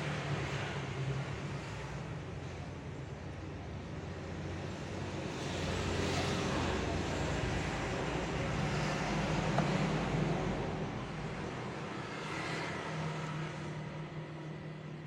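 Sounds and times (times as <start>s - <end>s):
road traffic hum: 0.0s - 15.0s.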